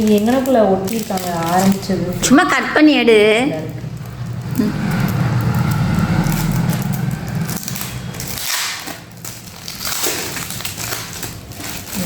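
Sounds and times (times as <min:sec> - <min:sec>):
plastic packaging crinkling: 0:00.0 - 0:02.4, 0:07.6 - 0:12.0
steady low hum: 0:01.8 - 0:11.1.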